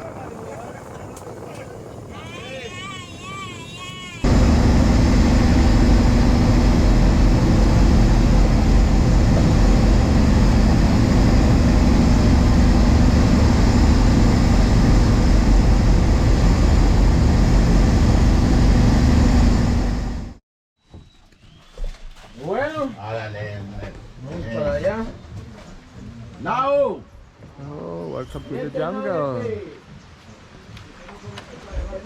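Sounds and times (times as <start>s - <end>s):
boat engine droning: 0.1s - 20.4s
rushing noise: 4.2s - 20.4s.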